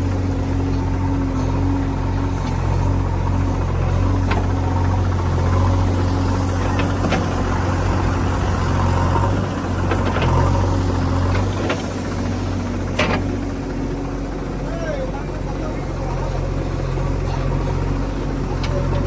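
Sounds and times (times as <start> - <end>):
diesel engine running: 0.0 - 19.0
sharp knocks and clanks: 12.9 - 13.5.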